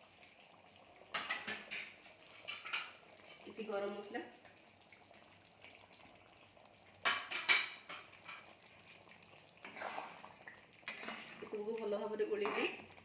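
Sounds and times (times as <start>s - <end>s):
faint sizzle: 0.0s - 13.0s
spoon scraping a pan: 1.1s - 3.6s, 7.1s - 10.2s, 10.8s - 11.6s, 12.4s - 12.8s.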